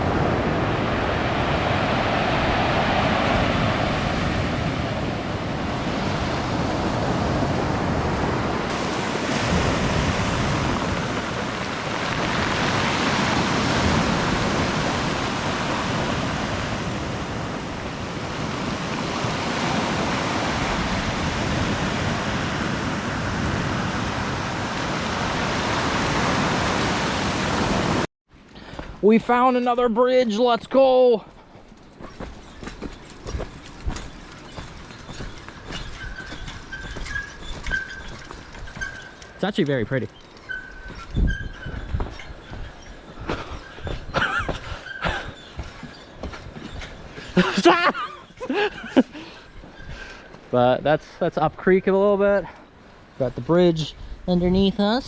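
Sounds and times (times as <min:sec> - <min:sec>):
ocean surf breaking on beach: 0:00.0 - 0:28.1.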